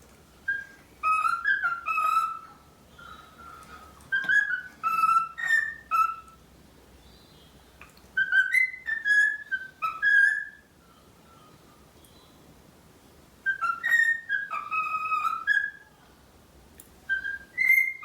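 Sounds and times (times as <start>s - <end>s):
cockatiel whistling: 0.5s - 2.5s, 4.1s - 6.3s, 8.2s - 10.7s, 13.4s - 15.8s, 17.1s - 18.0s.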